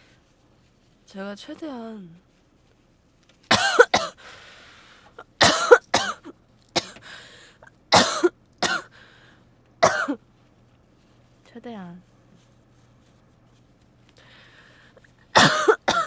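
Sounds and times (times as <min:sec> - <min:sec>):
woman coughing: 0:03.5 - 0:04.3, 0:05.2 - 0:07.2, 0:07.9 - 0:09.0, 0:09.8 - 0:10.2, 0:15.4 - 0:16.0.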